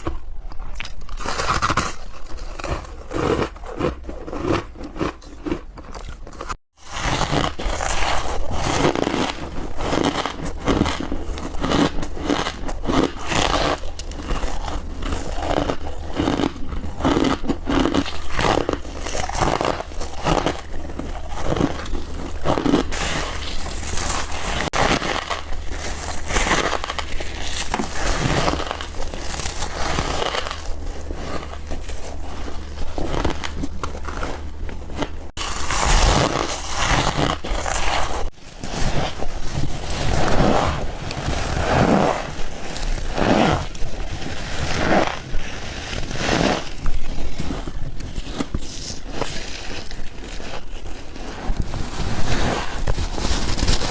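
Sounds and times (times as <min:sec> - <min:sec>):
chewing crunchy ice: 0:00.0 - 0:53.9.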